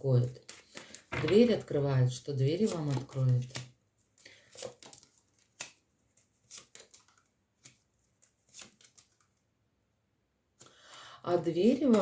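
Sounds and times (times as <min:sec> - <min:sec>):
cards clicking and rustling: 0:00.3 - 0:01.8, 0:02.6 - 0:09.5, 0:11.7 - 0:12.0.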